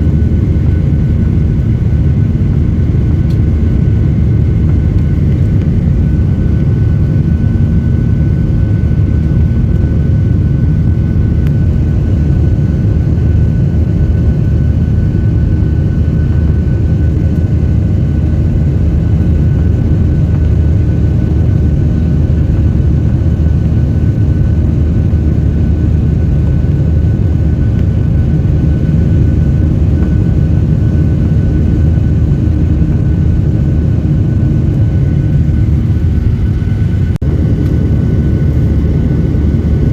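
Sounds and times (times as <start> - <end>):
jet engine cabin rumble: 0.0 - 39.9.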